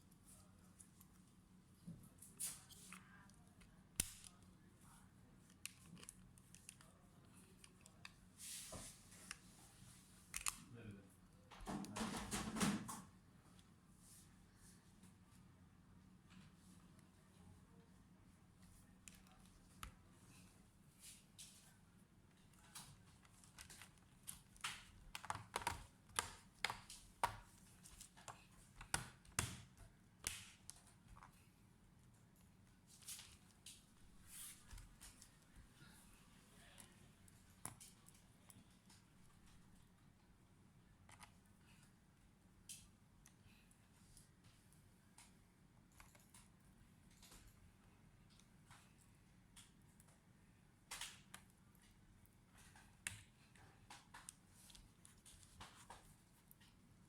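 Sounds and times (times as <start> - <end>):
small clicks of laptop parts: 2.4 - 4.5, 5.5 - 8.2, 10.3 - 10.7, 22.3 - 31.4, 36.8 - 39.6, 42.6 - 47.6, 48.2 - 56.8
clicks and taps on plastic case: 23.6 - 30.4.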